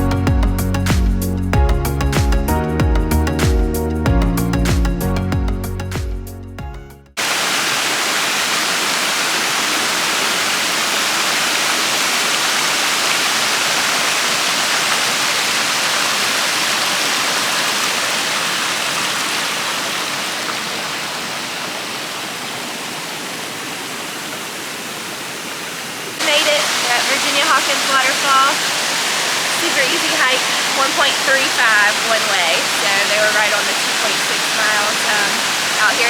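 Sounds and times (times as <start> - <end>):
background music: 0.0 - 7.1
waterfall rushing: 7.2 - 36.0.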